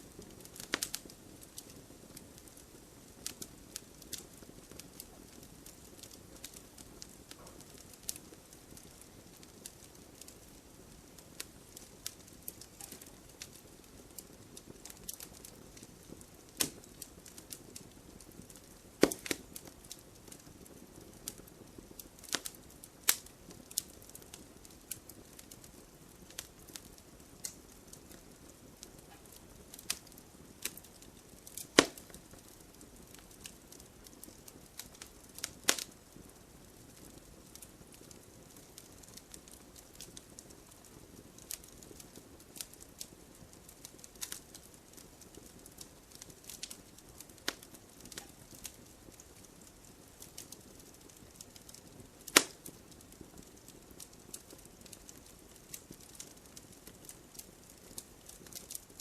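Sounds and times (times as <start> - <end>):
faint steady hiss: 0.0 - 59.0
firewood crackling: 0.0 - 59.0
sharp pops and snaps: 0.2 - 1.7, 11.8 - 17.6, 18.4 - 21.4, 22.0 - 24.3, 28.8 - 33.4, 34.2 - 36.0, 44.1 - 48.8, 50.2 - 59.0.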